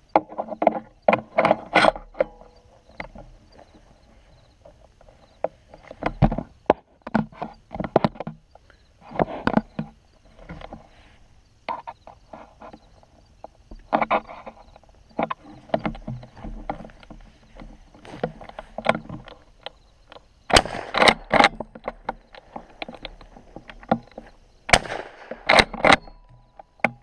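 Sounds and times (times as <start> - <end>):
rustling: 0.3 - 27.0
scraping and rustling: 9.0 - 26.1.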